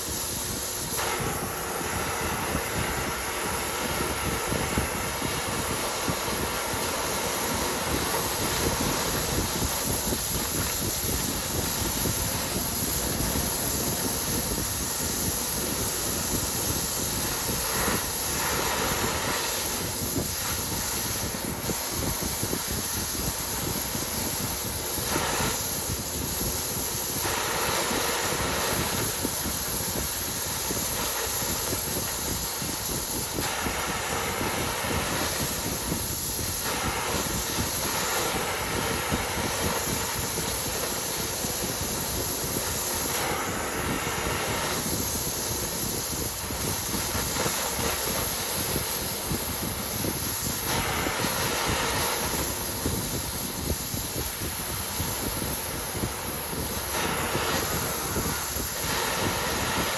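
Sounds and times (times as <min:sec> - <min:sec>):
steady hissing from metal work: 0:00.0 - 0:59.9.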